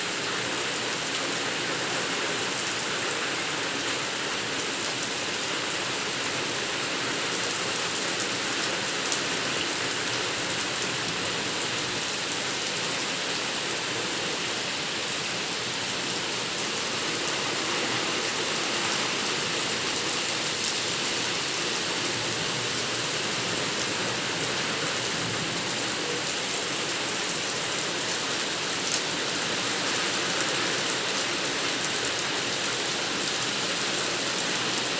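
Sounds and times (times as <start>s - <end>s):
steady rain falling: 0.0s - 34.9s.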